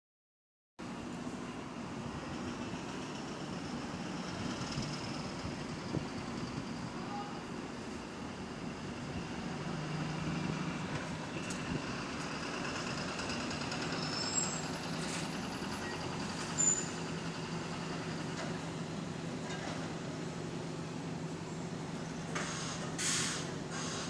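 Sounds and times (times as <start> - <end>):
bus engine knocking: 10.7 - 20.1, 22.1 - 24.0
high squeaks: 16.5 - 17.0.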